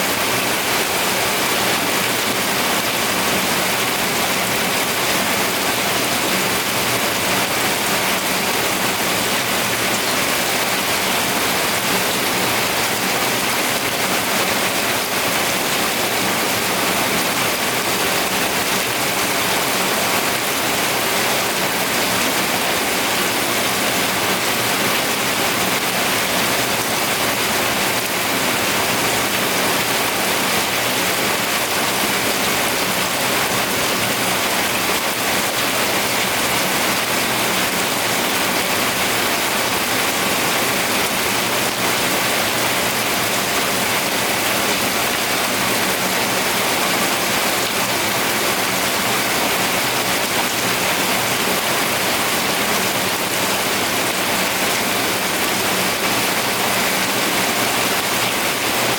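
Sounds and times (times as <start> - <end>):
steady rainfall: 0.0 - 58.9.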